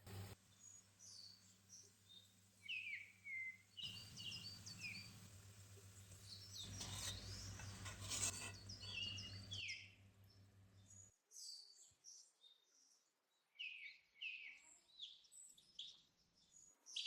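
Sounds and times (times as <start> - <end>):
birds chirping: 2.1 - 9.7.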